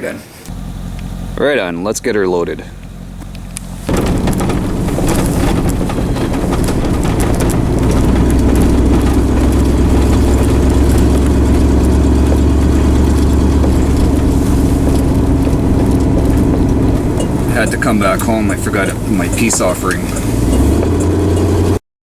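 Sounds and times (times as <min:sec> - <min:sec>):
vehicle engine droning: 0:00.5 - 0:21.8
clicks and rattles: 0:02.8 - 0:21.8.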